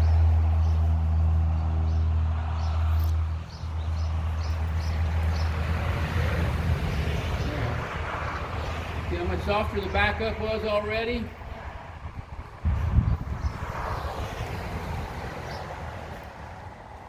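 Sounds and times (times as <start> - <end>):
vehicle engine drone: 0.0 - 17.0.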